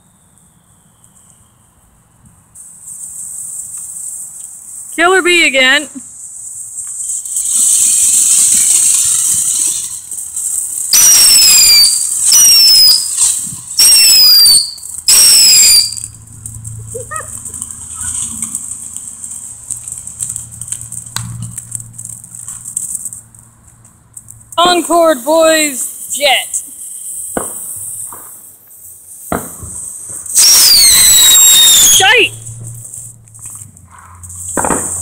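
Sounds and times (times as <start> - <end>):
shrill firework whistles: 0.0 - 21.1, 24.6 - 35.0
hissing fuse: 0.4 - 35.0.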